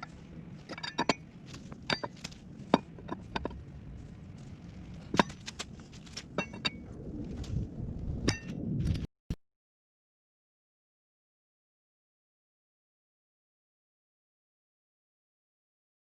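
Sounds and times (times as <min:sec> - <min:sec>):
metal hand tools clinking: 0:00.0 - 0:01.2.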